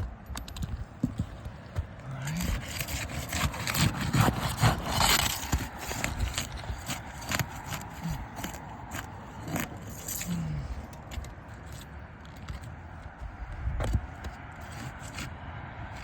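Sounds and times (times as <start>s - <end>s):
roof shingles scraping and knocking: 1.0s - 9.9s, 13.9s - 15.3s.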